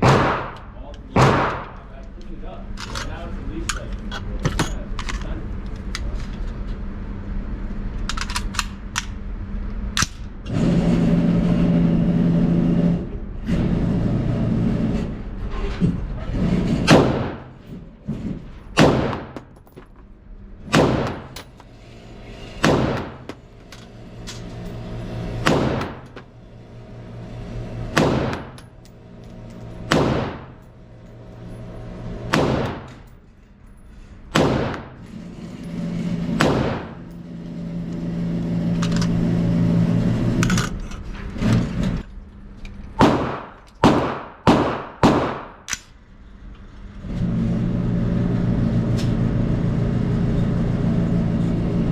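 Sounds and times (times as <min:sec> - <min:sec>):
rifle shots: 0:00.0 - 0:01.8, 0:16.9 - 0:17.5, 0:18.8 - 0:19.4, 0:20.7 - 0:21.4, 0:22.6 - 0:23.4, 0:25.4 - 0:26.1, 0:28.0 - 0:28.6, 0:29.9 - 0:30.6, 0:32.3 - 0:33.0, 0:34.3 - 0:35.0, 0:36.4 - 0:37.0, 0:43.0 - 0:45.7
droning hum: 0:00.0 - 0:51.9.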